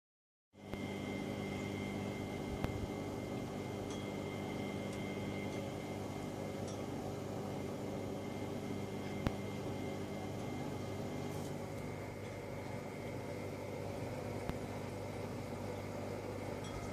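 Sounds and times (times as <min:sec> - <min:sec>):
washing machine motor hum: 0:00.6 - 0:16.9.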